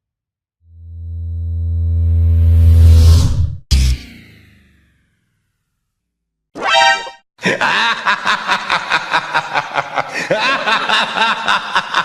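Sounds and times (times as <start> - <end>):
rising electronic blip: 6.6 - 7.2
voice cackling: 6.6 - 12.0.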